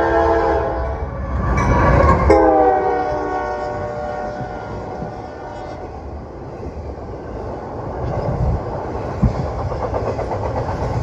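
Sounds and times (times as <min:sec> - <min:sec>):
train horn: 0:00.0 - 0:01.2, 0:02.1 - 0:06.0
train wheels rumbling on rail: 0:00.0 - 0:11.0.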